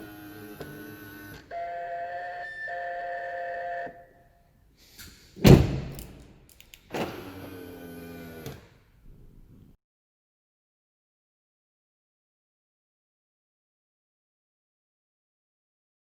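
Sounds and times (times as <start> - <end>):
mirror motor whirring: 0.0 - 1.8, 7.0 - 8.6
loud thunk: 5.4 - 6.2.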